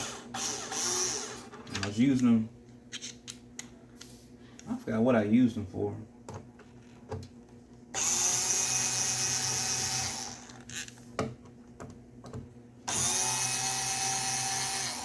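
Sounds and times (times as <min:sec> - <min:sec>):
cordless drill driving screws: 0:00.0 - 0:01.5, 0:08.0 - 0:10.8, 0:12.9 - 0:15.0.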